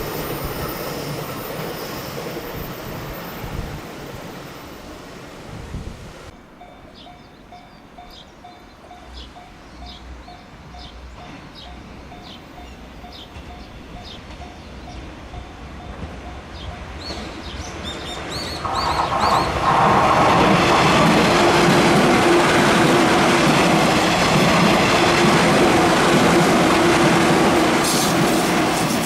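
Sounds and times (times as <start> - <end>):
train passing: 0.0 - 29.0
birds chirping: 16.5 - 19.7.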